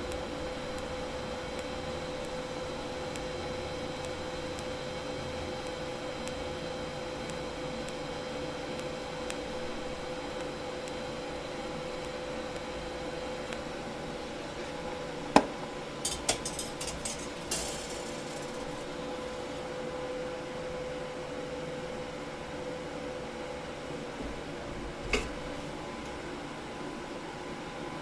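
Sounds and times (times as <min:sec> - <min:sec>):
welder buzzing hum: 0:00.0 - 0:26.1
small ticks: 0:00.1 - 0:00.9, 0:04.0 - 0:04.8, 0:05.6 - 0:06.4, 0:07.2 - 0:11.0.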